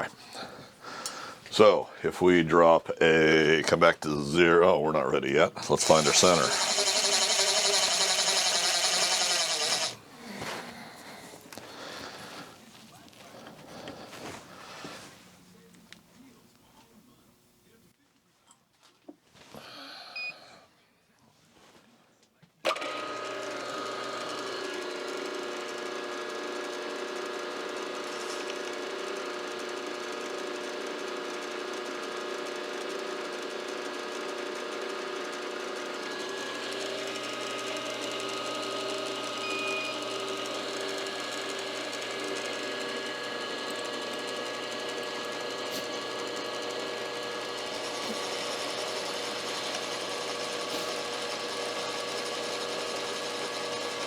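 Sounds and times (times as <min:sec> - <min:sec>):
milling machine humming: 0:05.5 - 0:10.4, 0:22.7 - 0:54.0.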